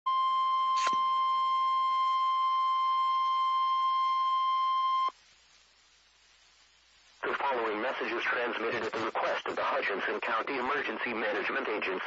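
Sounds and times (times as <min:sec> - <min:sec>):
single-pitch alarm tone: 0:00.1 - 0:05.1.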